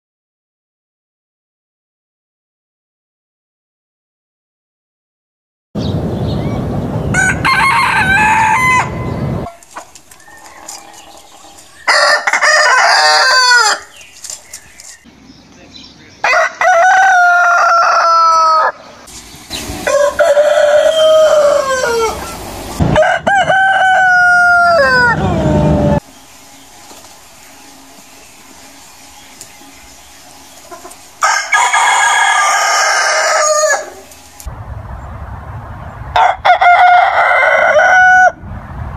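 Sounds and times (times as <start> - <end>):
roosters crowing: 6.4 - 15.0, 16.1 - 34.4, 36.0 - 38.5.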